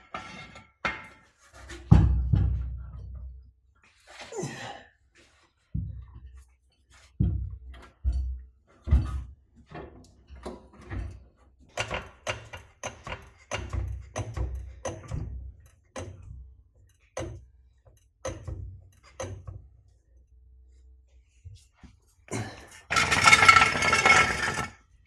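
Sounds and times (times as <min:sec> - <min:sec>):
metal scrape: 0:22.9 - 0:24.8.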